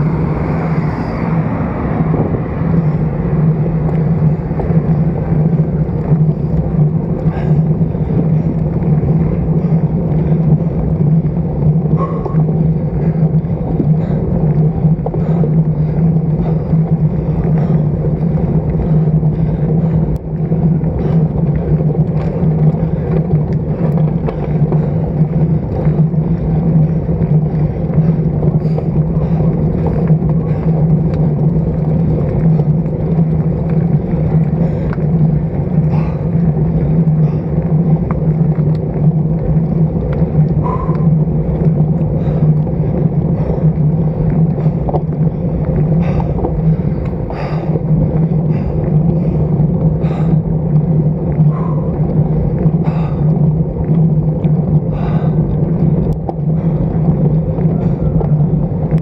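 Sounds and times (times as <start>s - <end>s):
bicycle road and wind noise: 0.0s - 59.0s
low hum: 0.0s - 59.0s
faint ticks: 39.6s - 42.7s.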